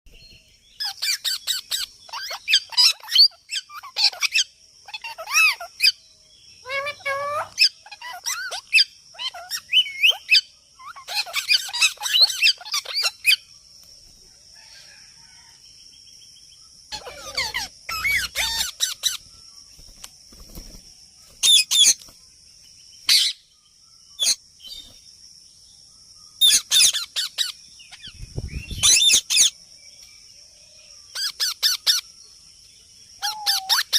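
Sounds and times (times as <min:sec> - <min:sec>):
parrot chattering and chirping: 0:00.8 - 0:06.0, 0:06.6 - 0:13.4, 0:16.9 - 0:19.2, 0:26.4 - 0:28.2, 0:28.8 - 0:29.6, 0:31.1 - 0:32.0, 0:33.2 - 0:33.9.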